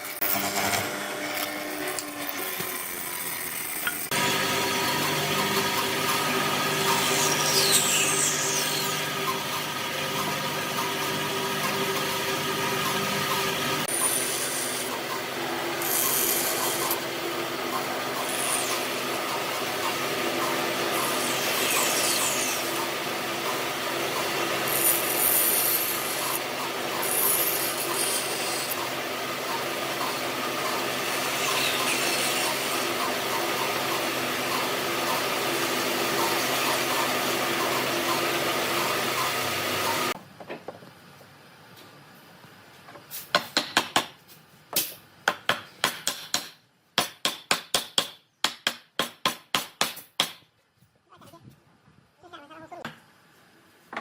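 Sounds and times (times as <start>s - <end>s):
power tool running on wood: 0.0s - 40.2s.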